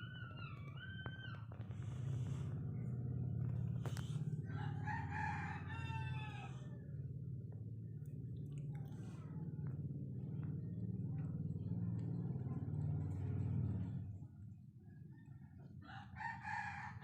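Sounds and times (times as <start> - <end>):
cat snoring: 1.6 - 4.3
rooster crowing: 4.4 - 6.8, 15.8 - 17.0.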